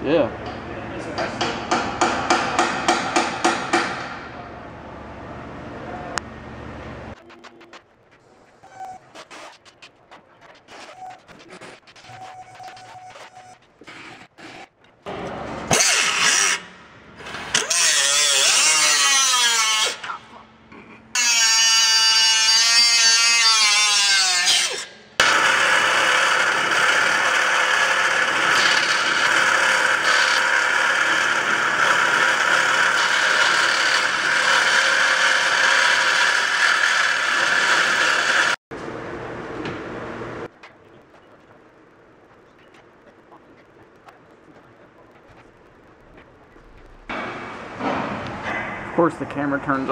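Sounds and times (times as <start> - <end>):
power tool running: 25.2 - 38.6.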